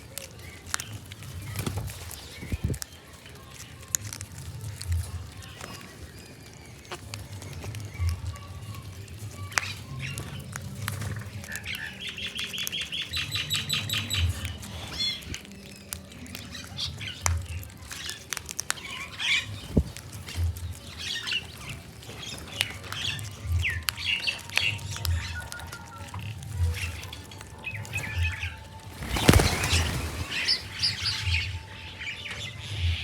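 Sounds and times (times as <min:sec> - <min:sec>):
birds chirping and calling: 0:00.0 - 0:33.0.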